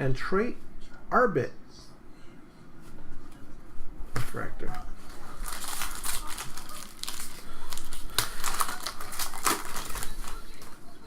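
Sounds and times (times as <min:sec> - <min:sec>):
trading cards clicking and rustling: 0:05.4 - 0:10.8.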